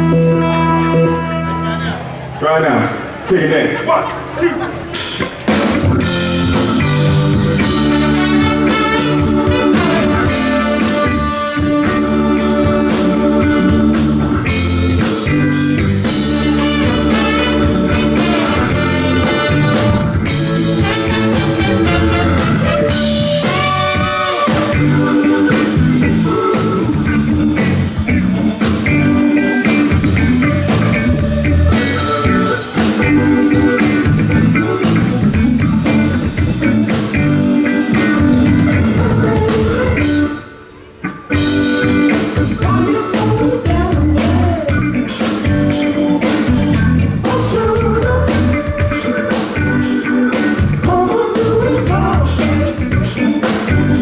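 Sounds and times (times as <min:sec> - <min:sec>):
live funk band playing: 0:00.0 - 0:54.0
person singing: 0:21.0 - 0:35.9, 0:37.7 - 0:40.8, 0:41.4 - 0:46.4, 0:47.2 - 0:54.0.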